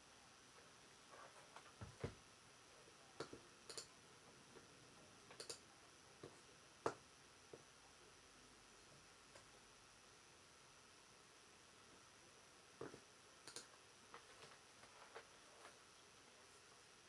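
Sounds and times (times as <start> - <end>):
keyboard and mouse clicks: 3.2 - 3.9, 5.3 - 5.6, 13.5 - 13.7.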